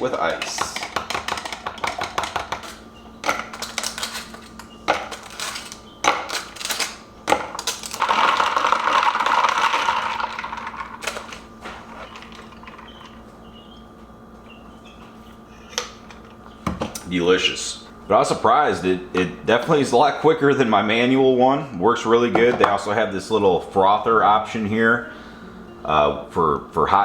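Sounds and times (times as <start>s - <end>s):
ice cubes clinking in glass: 3.3s - 11.3s
ice rattling: 7.5s - 13.2s.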